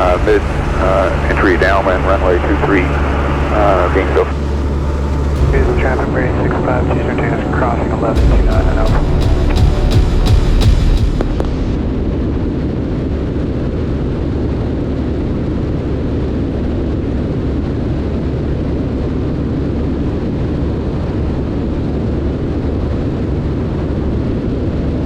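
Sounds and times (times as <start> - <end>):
light aircraft engine drone: 0.0 - 10.4
airflow noise: 0.0 - 14.9.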